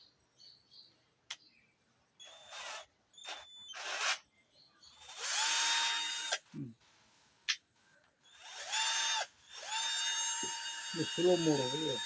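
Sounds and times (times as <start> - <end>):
cordless drill motor whirring: 2.2 - 4.2, 5.0 - 6.5, 8.2 - 12.0.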